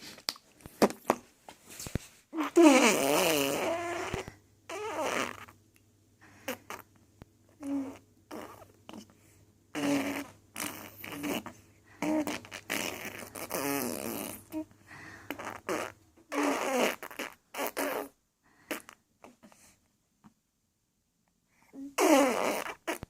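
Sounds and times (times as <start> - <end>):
baby blowing raspberries: 2.4 - 5.6, 6.4 - 6.9, 7.6 - 9.0, 9.7 - 19.6, 21.7 - 23.0.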